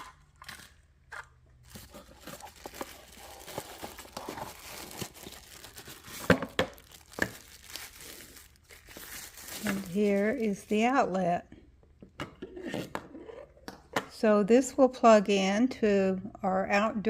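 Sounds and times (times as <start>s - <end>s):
packaging crinkling and tearing: 0.0s - 10.8s.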